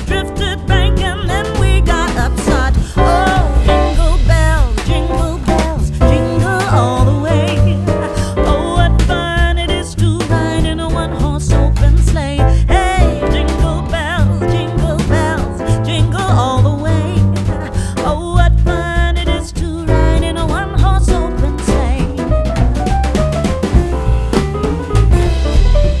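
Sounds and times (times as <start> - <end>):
song with bass and beat: 0.0 - 26.0.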